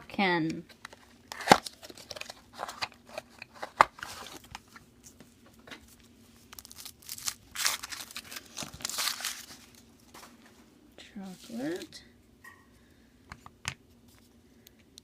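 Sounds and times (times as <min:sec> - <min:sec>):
foil wrapper crinkling and tearing: 0:06.4 - 0:09.9.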